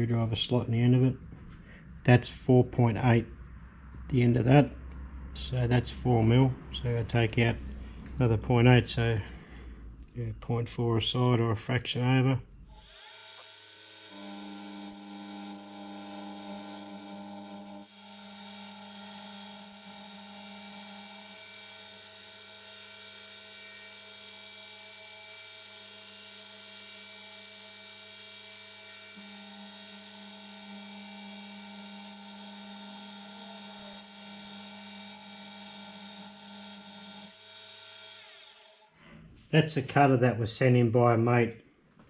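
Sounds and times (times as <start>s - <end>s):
milling machine motor humming: 12.7s - 38.9s.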